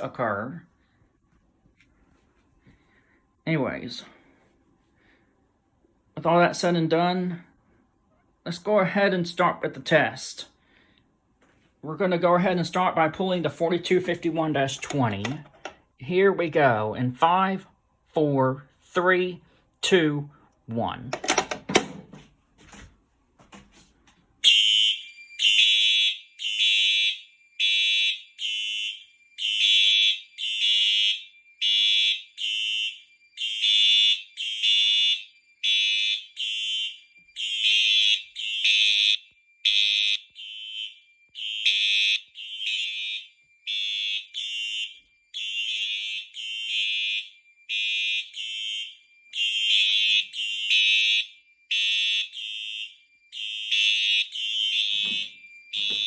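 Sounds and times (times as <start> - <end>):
fire alarm horns pulsing: 11.9 - 16.1, 24.4 - 56.0
steady high alarm tone: 12.0 - 17.7, 24.4 - 56.0.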